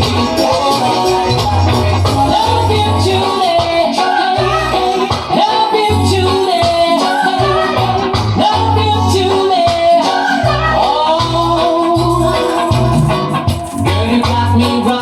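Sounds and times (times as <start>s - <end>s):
deep stop-start bass line: 0.0s - 3.4s, 5.9s - 9.4s, 10.5s - 15.0s
gliding melodic lead: 0.0s - 9.6s, 10.3s - 15.0s
shaker: 12.0s - 15.0s.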